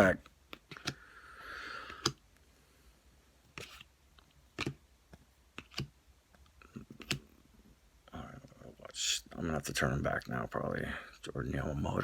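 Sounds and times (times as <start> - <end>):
trading cards clicking: 0.5 - 1.0, 1.8 - 2.2, 4.5 - 5.9.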